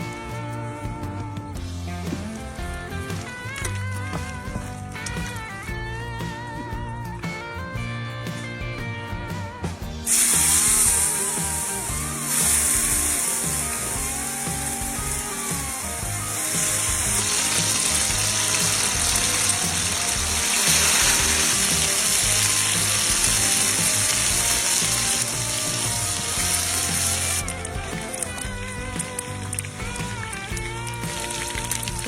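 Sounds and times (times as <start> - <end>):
background music: 0.0 - 32.0
rice sizzling in a pan: 10.0 - 32.0.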